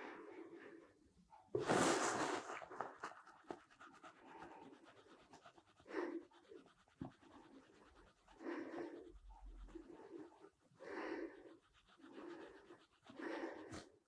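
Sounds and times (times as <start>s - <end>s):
faint breathing: 8.3s - 14.0s.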